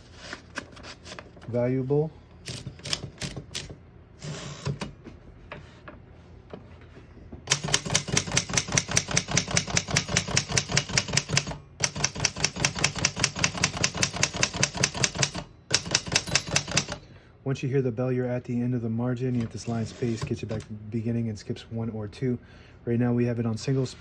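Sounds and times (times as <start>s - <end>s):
paper rustle: 0.0s - 1.5s
typewriter typing: 2.5s - 4.8s, 7.5s - 17.0s.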